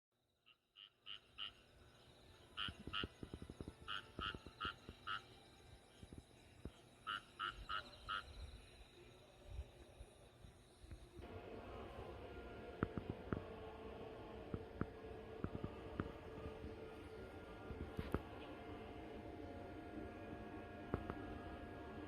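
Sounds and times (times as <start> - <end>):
frog croaking: 0.5 - 1.7, 2.6 - 5.4, 7.0 - 8.5.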